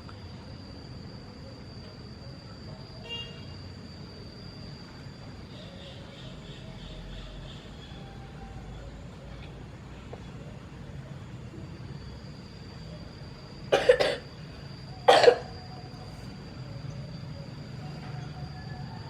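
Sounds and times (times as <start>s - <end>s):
boy coughing: 13.7s - 14.2s, 15.1s - 15.5s.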